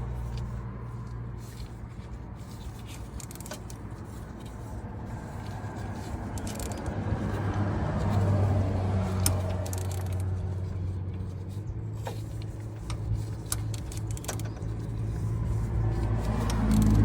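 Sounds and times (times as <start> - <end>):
low engine hum: 0.0 - 17.0
ratchet wrench clicking: 2.4 - 10.7, 12.1 - 17.0.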